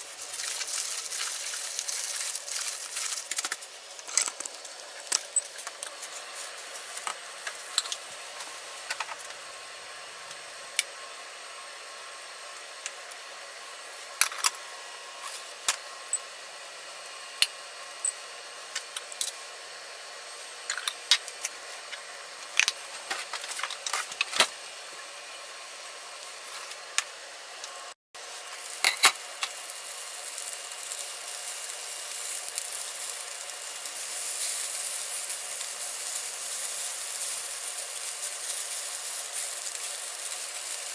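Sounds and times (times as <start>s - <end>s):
steady hiss: 0.0s - 9.4s, 28.2s - 40.9s.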